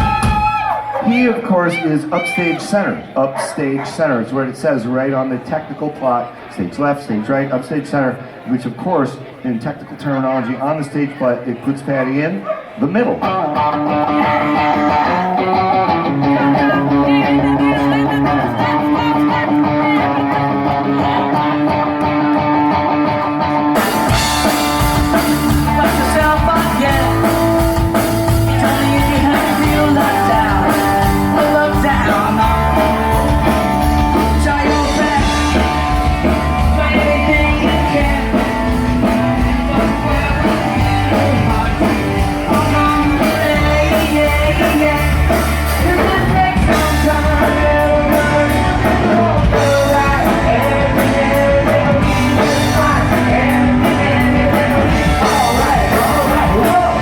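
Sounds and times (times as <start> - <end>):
bass guitar: 0.0 - 1.0, 13.1 - 57.0
drum kit: 0.0 - 1.0, 13.6 - 57.0
electric guitar: 13.1 - 57.0
person singing: 13.2 - 57.0.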